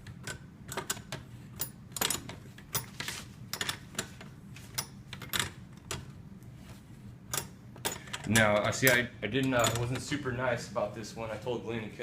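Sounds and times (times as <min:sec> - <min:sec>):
steady low hum: 0:00.0 - 0:12.0
metal tools clicking and clinking: 0:07.3 - 0:10.2.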